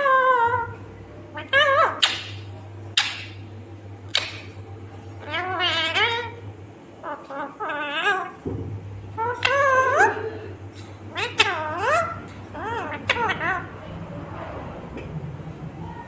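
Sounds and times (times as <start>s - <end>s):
parakeet squawking: 0.0s - 3.4s, 4.1s - 4.6s, 5.2s - 6.4s, 7.0s - 8.4s, 9.1s - 14.2s
parakeet warbling calls: 0.0s - 3.4s, 4.1s - 4.6s, 5.2s - 6.4s, 7.0s - 8.4s, 9.1s - 14.0s.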